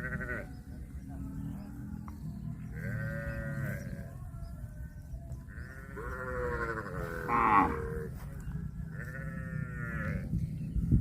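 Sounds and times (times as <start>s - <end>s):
farm animal bleating: 0.0s - 0.7s, 2.6s - 4.2s, 5.4s - 10.4s.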